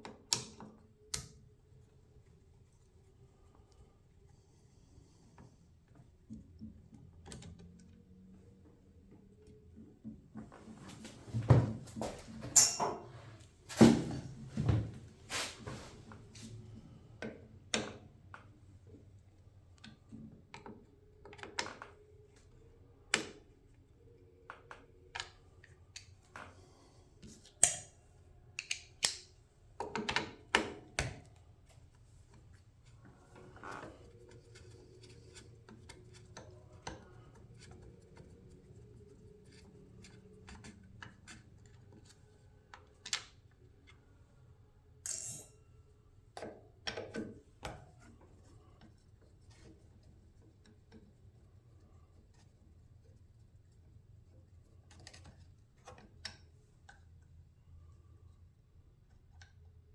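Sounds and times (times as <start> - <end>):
hand tools clinking on metal: 45.1 - 45.6.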